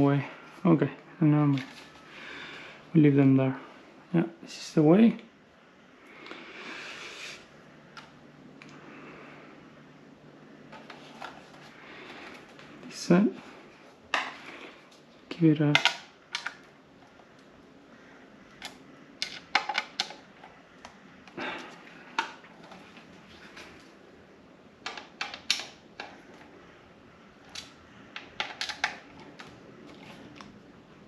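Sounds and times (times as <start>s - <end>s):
plastic parts clicking together: 15.7s - 16.7s, 18.6s - 21.0s, 24.8s - 26.2s, 27.4s - 30.5s.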